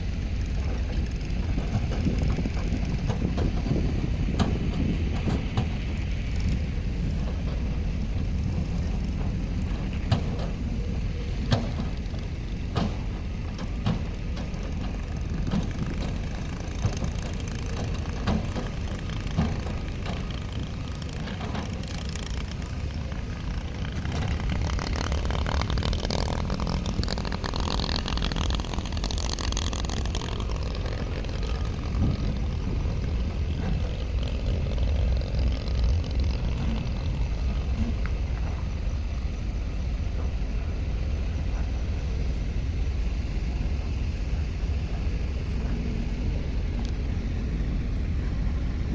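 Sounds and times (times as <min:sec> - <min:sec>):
diesel machinery rumbling: 0:00.0 - 0:48.9
metal knocks and clanks: 0:11.4 - 0:22.6.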